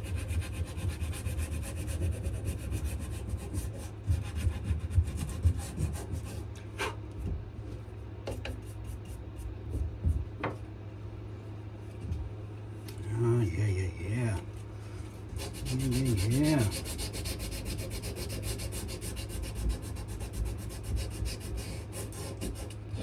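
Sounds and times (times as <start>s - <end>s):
sandpaper rubbing on wood: 0.0s - 6.4s, 15.4s - 22.8s.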